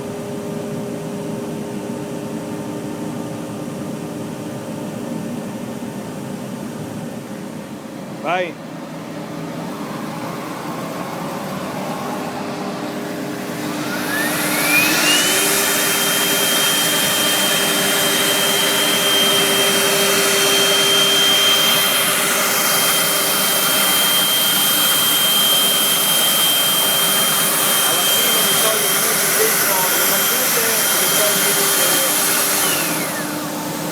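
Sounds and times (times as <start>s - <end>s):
router spindle whine: 9.6s - 33.9s.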